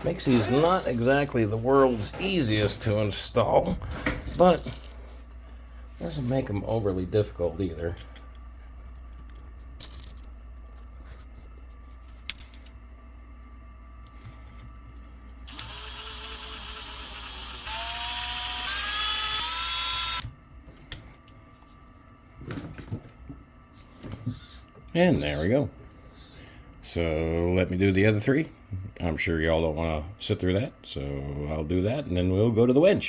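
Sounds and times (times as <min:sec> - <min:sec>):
cordless power driver whine: 0:15.4 - 0:20.3.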